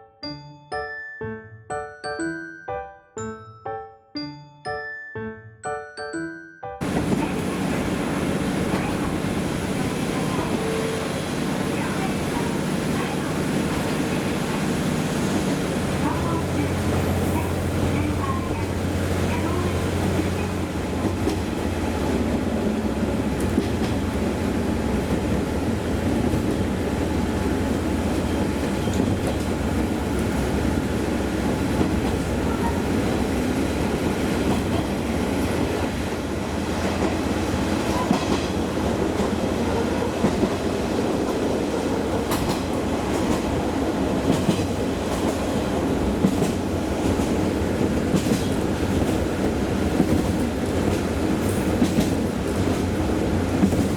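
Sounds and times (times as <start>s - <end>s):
wheels clicking over rail joints: 6.8s - 14.6s, 37.8s - 53.9s
train rumbling on track: 6.8s - 53.9s.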